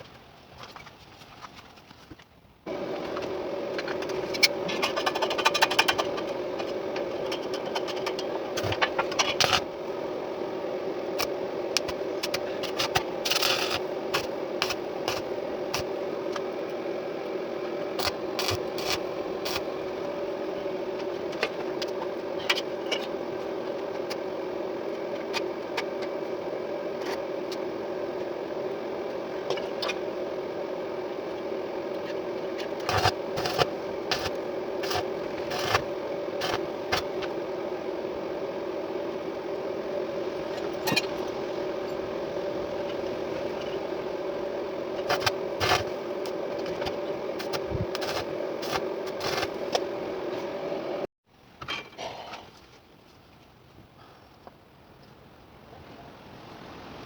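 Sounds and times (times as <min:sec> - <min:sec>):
electric motor running: 0:11.2 - 0:20.7, 0:31.6 - 0:37.9, 0:43.4 - 0:50.3.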